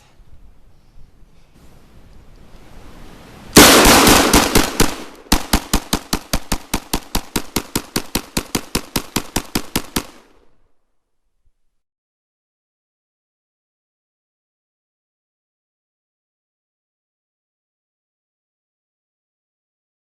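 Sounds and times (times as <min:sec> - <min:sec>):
pistol firing rapidly: 0:03.6 - 0:10.3.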